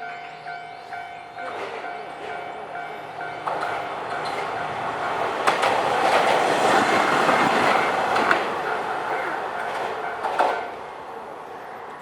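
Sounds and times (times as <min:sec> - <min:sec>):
tram wheels rumbling on rails: 0:00.1 - 0:12.0
wheels clacking over rail joints: 0:01.4 - 0:10.8.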